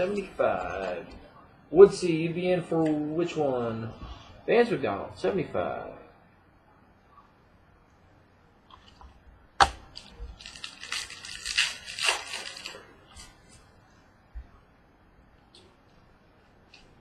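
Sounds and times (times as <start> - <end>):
cards crinkling and rustling: 9.8 - 13.7.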